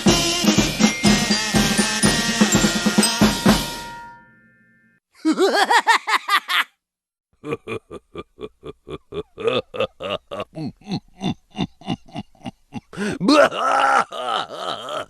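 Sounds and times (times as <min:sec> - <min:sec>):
drum kit beat: 0:00.0 - 0:04.1.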